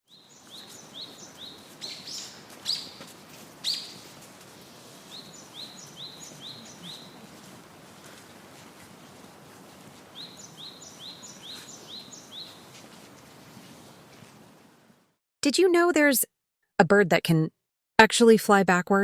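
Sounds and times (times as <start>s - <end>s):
bird chirping: 0.1s - 3.0s, 3.6s - 4.1s, 5.0s - 7.3s, 10.1s - 12.7s.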